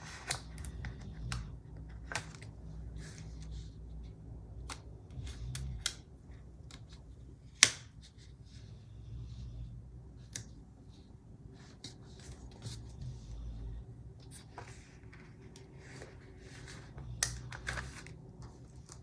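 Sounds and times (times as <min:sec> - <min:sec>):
paper and sticker sheets rustling: 0:00.0 - 0:05.8, 0:10.2 - 0:19.0.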